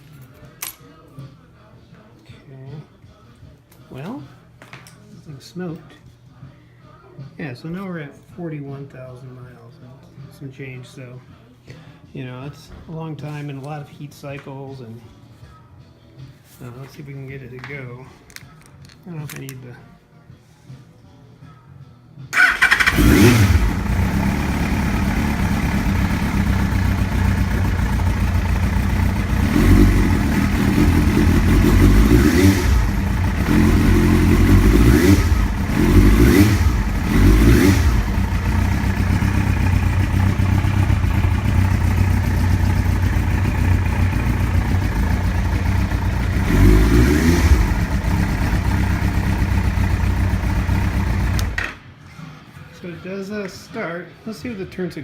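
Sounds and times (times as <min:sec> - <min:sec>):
motorcycle engine running: 0:22.4 - 0:51.7.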